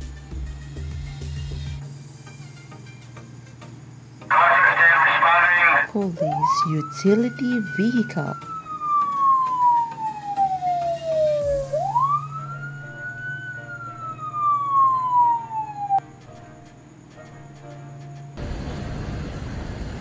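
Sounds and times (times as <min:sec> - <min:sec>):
police siren wailing: 0:04.3 - 0:16.0.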